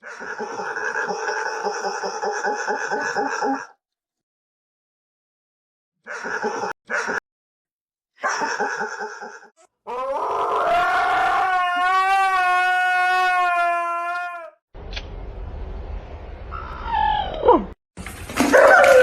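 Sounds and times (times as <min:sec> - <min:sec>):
dog yowling and howling: 0:09.9 - 0:14.5, 0:18.5 - 0:19.0.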